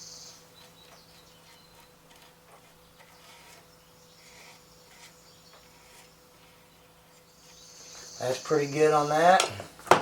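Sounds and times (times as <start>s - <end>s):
glue spreader scraping wood: 0.6s - 7.7s.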